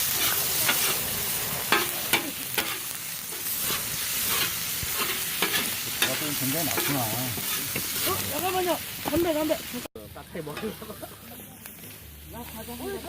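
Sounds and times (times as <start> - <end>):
food sizzling on a griddle: 0.0 - 13.0
utensil scraping and tapping metal: 1.8 - 7.9.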